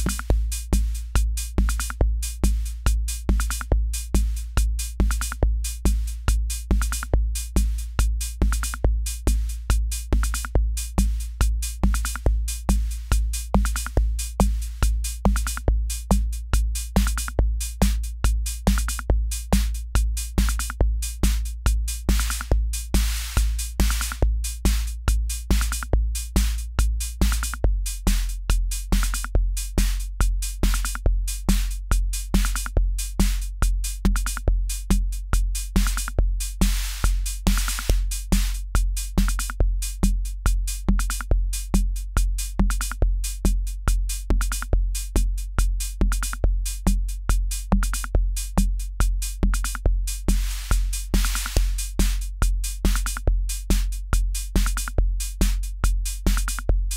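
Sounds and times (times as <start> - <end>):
drum machine kick: 0.0 - 56.9
hi-hat hits: 0.0 - 56.9.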